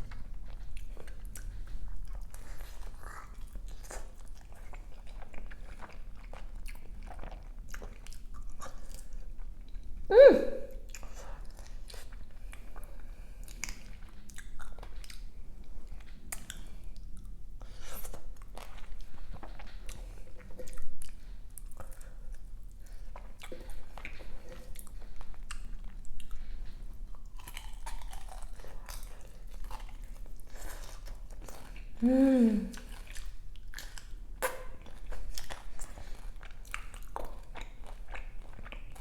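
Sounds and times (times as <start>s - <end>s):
crunchy chewing: 10.9s - 32.0s, 32.7s - 39.0s.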